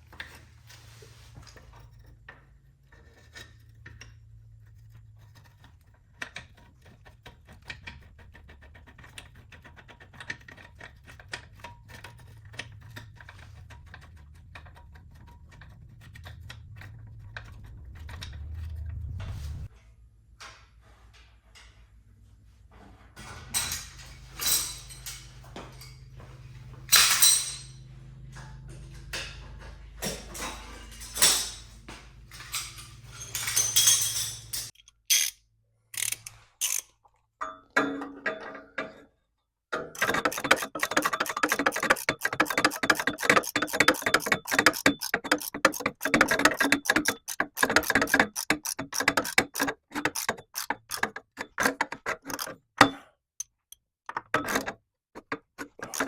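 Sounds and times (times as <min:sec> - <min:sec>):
metal clanks and knocks: 0:23.2 - 0:34.7, 0:37.4 - 0:39.1, 0:39.7 - 0:53.0, 0:54.1 - 0:56.0
hand ratchet clicking: 0:36.0 - 0:36.9, 0:40.0 - 0:52.6, 0:55.6 - 0:56.0.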